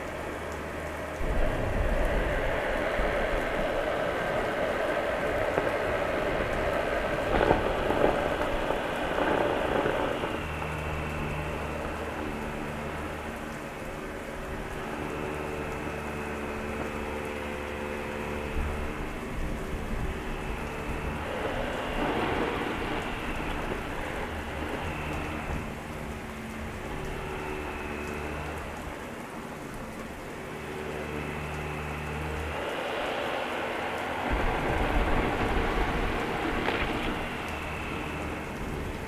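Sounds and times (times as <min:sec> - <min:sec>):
heavy rain falling: 0:00.0 - 0:39.0
thunder: 0:01.2 - 0:04.4, 0:05.5 - 0:10.7, 0:34.3 - 0:38.0.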